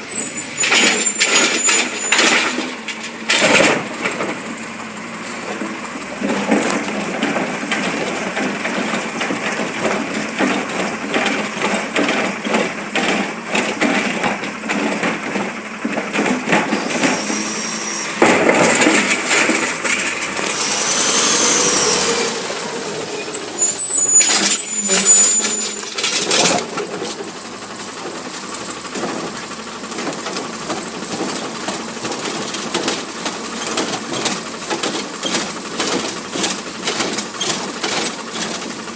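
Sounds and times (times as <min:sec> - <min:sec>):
garbage truck engine running: 0:00.0 - 0:38.9
recyclables clattering and banging: 0:00.6 - 0:04.5, 0:05.4 - 0:17.2, 0:18.2 - 0:20.6, 0:24.2 - 0:28.2, 0:28.8 - 0:38.9
brief hiss: 0:16.8 - 0:18.2.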